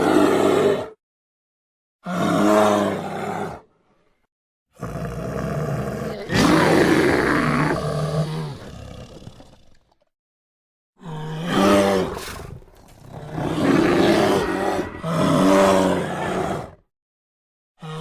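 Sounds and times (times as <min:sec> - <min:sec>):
bear roar: 0:00.0 - 0:01.0, 0:02.0 - 0:03.7, 0:04.8 - 0:09.5, 0:11.0 - 0:16.8.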